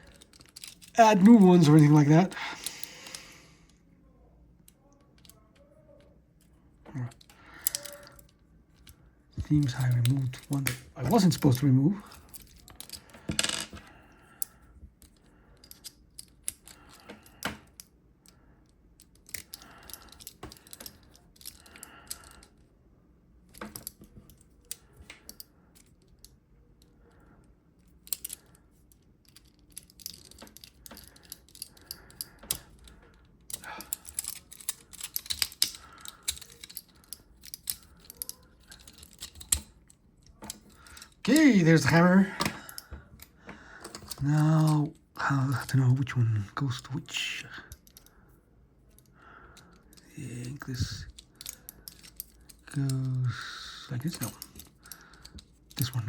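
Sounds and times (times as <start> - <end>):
plastic toy parts clicking: 0.0 - 1.4, 7.1 - 9.0, 14.4 - 18.4, 19.0 - 22.6, 23.5 - 26.4, 27.8 - 41.2, 48.9 - 53.4, 54.0 - 56.0.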